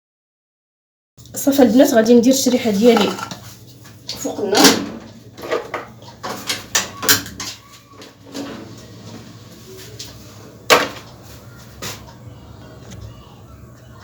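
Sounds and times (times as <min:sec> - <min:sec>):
metal pot knocks and clatters: 0:02.8 - 0:03.4.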